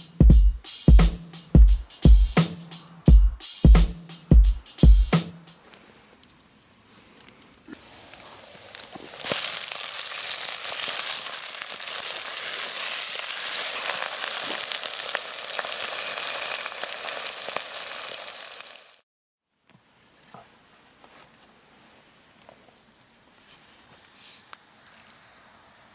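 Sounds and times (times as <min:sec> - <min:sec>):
food sizzling in a pan: 0:07.7 - 0:19.0.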